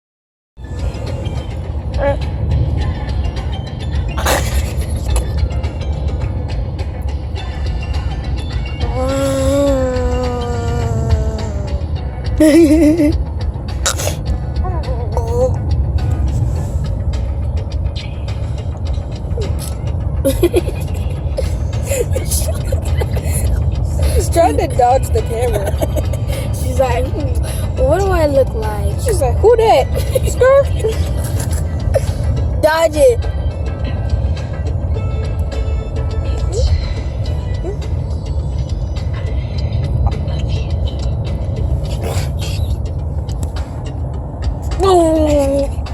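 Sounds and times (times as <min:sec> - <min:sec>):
vehicle rumble from inside cabin: 0:00.6 - 0:45.9.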